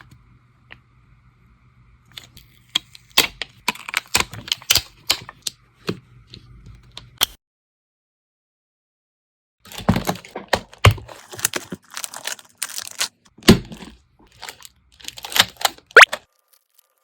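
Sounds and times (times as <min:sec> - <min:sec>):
plastic packaging crinkling: 0:09.7 - 0:17.0.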